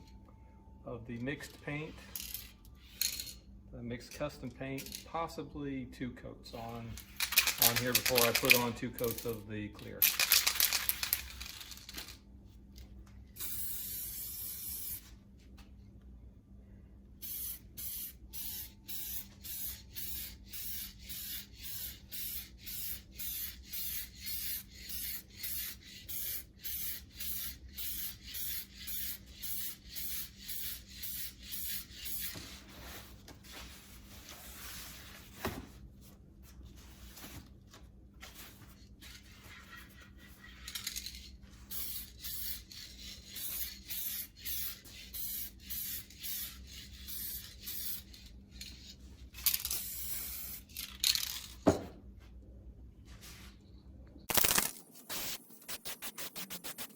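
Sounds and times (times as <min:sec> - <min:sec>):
paint spray hissing: 0:13.4 - 0:15.1, 0:17.2 - 0:32.3, 0:41.7 - 0:48.1, 0:49.7 - 0:50.6, 0:55.1 - 0:56.9.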